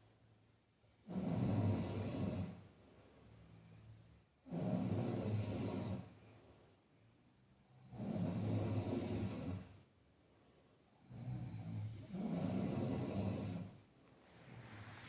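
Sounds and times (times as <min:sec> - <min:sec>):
person snoring: 0:00.9 - 0:02.6, 0:04.4 - 0:06.1, 0:07.8 - 0:09.8, 0:11.0 - 0:13.8.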